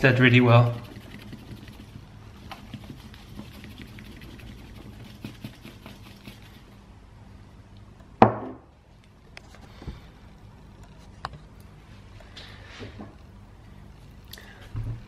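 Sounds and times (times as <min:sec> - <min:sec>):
powder being stirred: 0:00.0 - 0:06.9.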